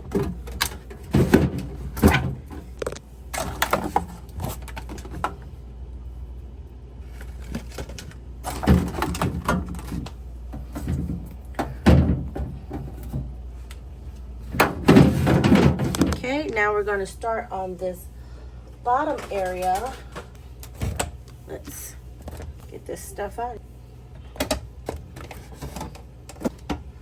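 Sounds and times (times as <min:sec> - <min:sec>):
food containers and jars clunking: 0:14.5 - 0:16.6.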